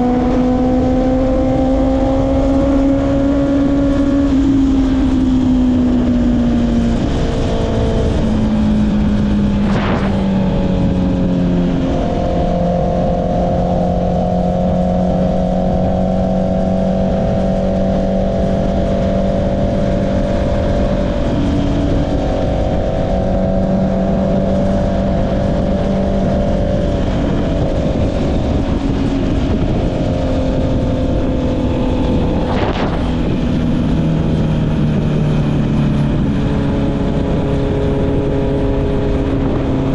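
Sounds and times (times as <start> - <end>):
motorcycle engine while riding: 0.0 - 39.9
wind noise on microphone: 0.0 - 39.9.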